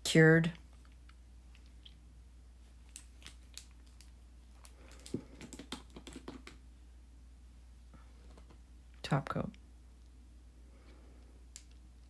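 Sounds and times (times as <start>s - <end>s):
small objects clicking on table: 4.9s - 6.6s.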